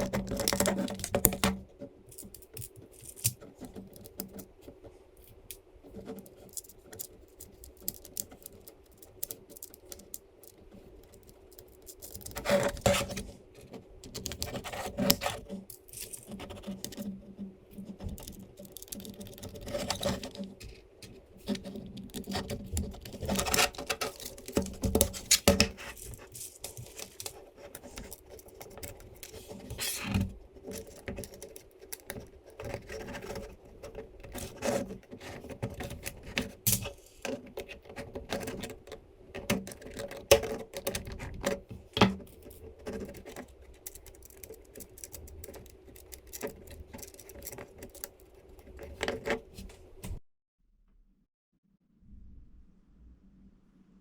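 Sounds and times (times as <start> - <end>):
plastic and metal parts clicking: 17.8 - 49.4
faint steady hum: 51.8 - 54.0.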